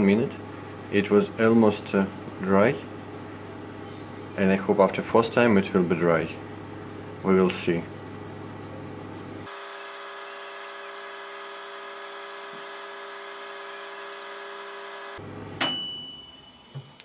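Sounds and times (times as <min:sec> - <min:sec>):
microwave oven humming: 0:00.0 - 0:17.0
microwave ding: 0:15.5 - 0:17.0.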